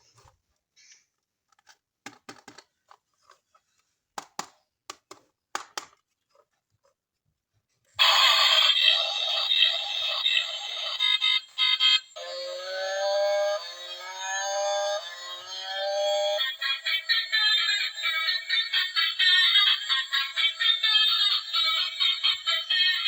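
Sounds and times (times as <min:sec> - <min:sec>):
plastic toys clicking: 0:01.4 - 0:03.6.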